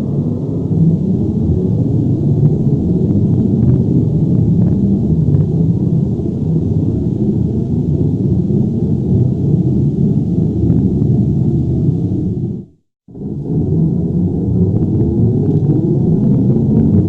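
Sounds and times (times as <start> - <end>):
deep earthquake rumble: 0.0 - 17.0.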